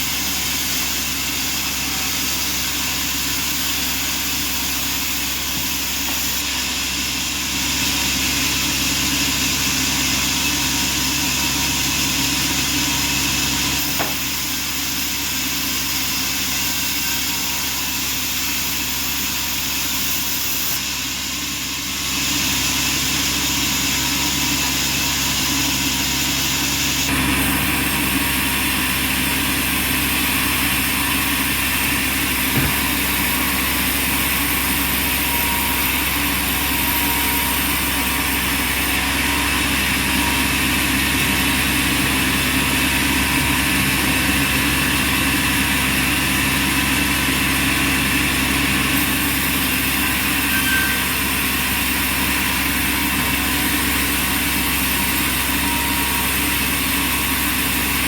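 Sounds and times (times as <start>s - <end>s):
sawmill machinery humming: 0.0s - 58.0s.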